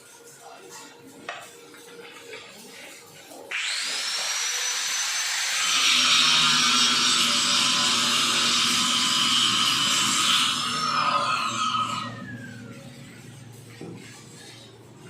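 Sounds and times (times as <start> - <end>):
power tool whine: 3.5 - 13.6
harsh grinding noise: 3.5 - 15.0.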